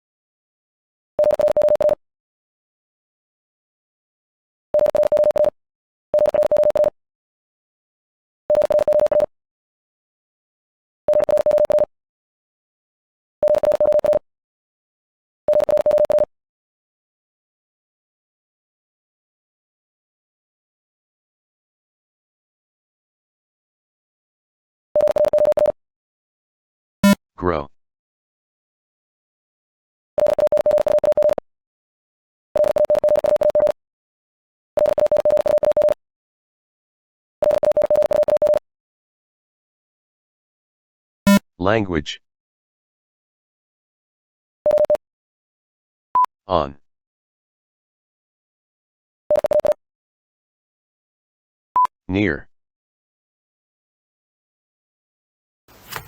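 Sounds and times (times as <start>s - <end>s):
morse code beeps: 1.2s - 2.0s, 4.8s - 5.6s, 6.2s - 7.0s, 8.5s - 9.3s, 11.1s - 11.9s, 13.4s - 14.2s, 15.5s - 16.3s, 25.0s - 25.8s, 30.2s - 31.4s, 32.6s - 33.8s, 34.8s - 36.0s, 37.4s - 38.6s, 44.7s - 45.0s, 49.3s - 49.8s
morse code tone: 6.2s - 6.9s, 32.6s - 33.8s, 34.8s - 36.0s, 37.4s - 38.6s.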